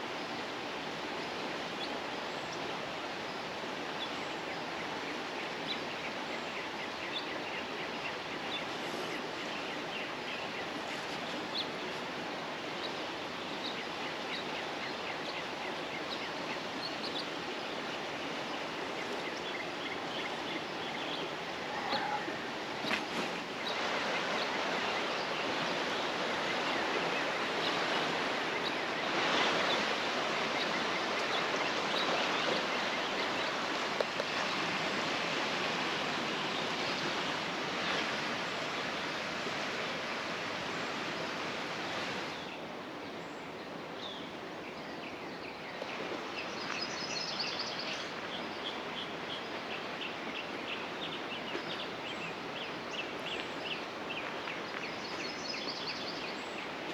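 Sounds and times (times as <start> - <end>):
creek water rushing: 7.6 - 43.0.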